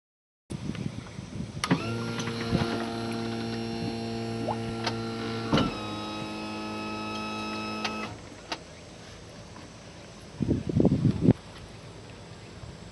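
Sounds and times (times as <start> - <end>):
electric buzzing hum: 1.6 - 8.2.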